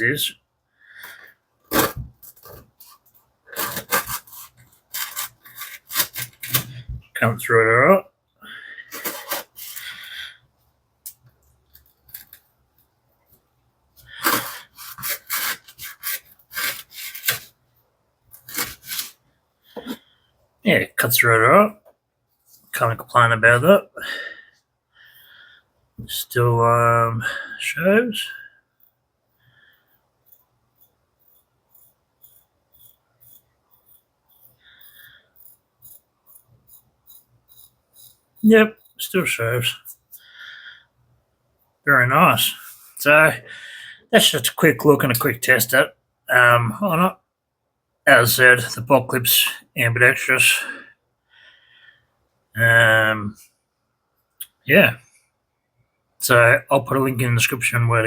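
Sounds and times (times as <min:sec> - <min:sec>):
knife sawing through rope: 0:01.7 - 0:06.8, 0:14.2 - 0:17.5, 0:18.4 - 0:19.2.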